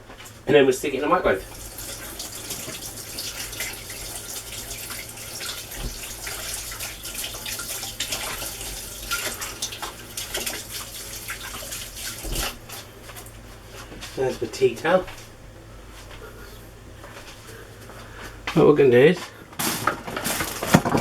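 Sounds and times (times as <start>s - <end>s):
tap running into sink: 1.3s - 12.6s, 19.6s - 21.0s
hands washing under splashing water: 1.3s - 12.8s, 19.6s - 21.0s.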